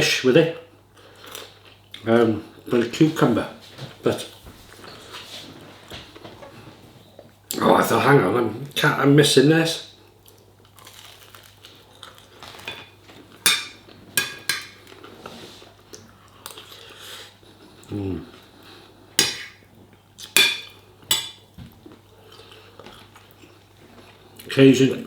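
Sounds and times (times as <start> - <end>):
cutlery clinking on a plate: 12.6 - 14.8, 20.3 - 21.4.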